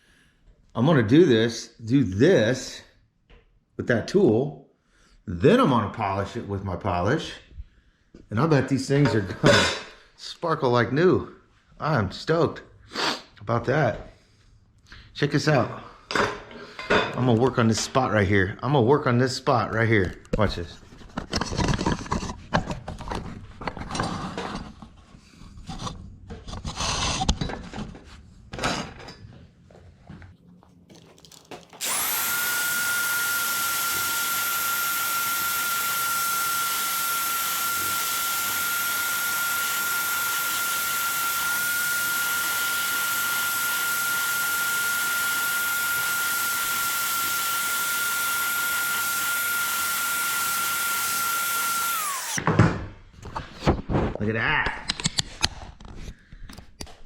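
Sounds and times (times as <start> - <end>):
power tool whining: 31.6 - 52.6.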